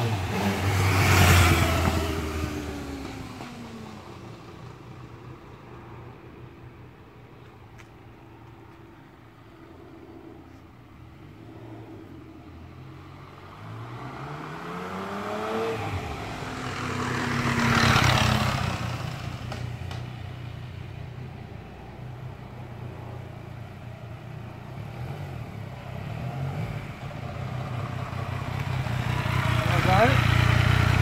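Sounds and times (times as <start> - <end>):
vehicle engine speeding up: 0.0 - 4.8, 11.2 - 19.7.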